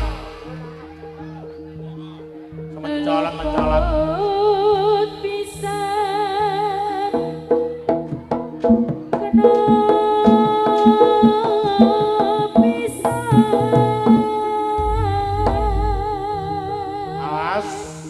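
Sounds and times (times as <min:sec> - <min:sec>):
deep low boom: 0:00.0 - 0:01.6, 0:14.8 - 0:18.0
wavering gamelan melody: 0:00.0 - 0:18.0
hand drum strokes: 0:08.4 - 0:18.0.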